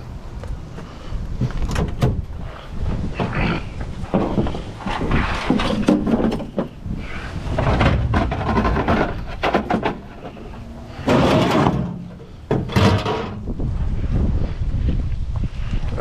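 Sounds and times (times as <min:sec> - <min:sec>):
scrap metal knocking and clanking: 0:03.2 - 0:13.4
steady low rumble: 0:13.2 - 0:16.0.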